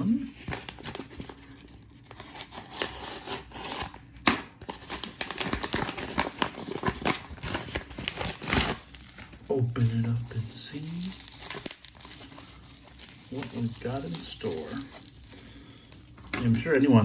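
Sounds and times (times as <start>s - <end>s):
packaging rustling and crinkling: 0.2s - 17.0s
packaging snips and tears: 2.0s - 9.5s, 10.7s - 16.4s.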